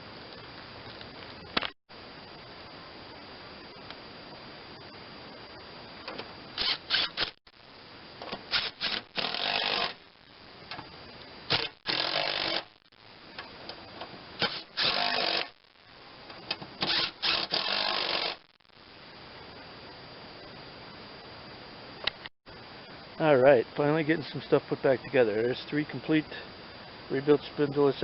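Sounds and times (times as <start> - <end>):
power drill bursts: 6.6 - 7.4, 8.5 - 10.0, 11.5 - 12.8, 14.4 - 15.6, 16.8 - 18.5.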